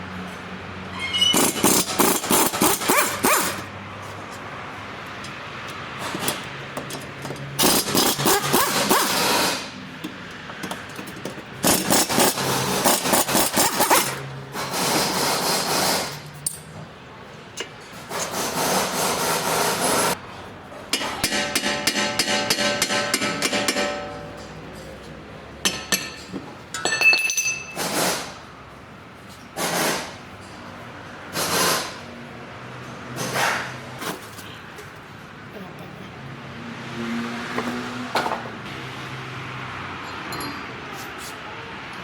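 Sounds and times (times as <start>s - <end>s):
metal tool scraping: 0.9s - 3.7s.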